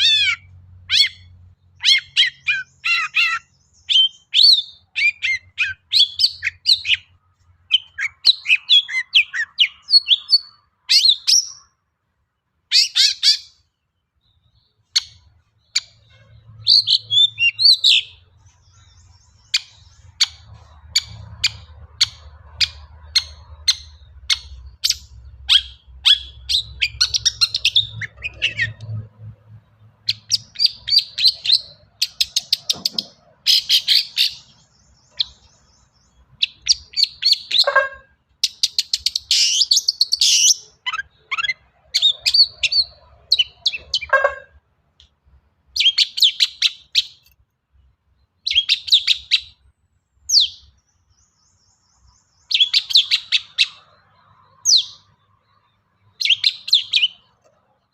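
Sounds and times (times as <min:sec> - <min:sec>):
bird chattering phrases: 0:00.0 - 0:07.1, 0:19.5 - 0:28.9, 0:36.4 - 0:44.6
bird singing sharp high notes: 0:14.3 - 0:29.0.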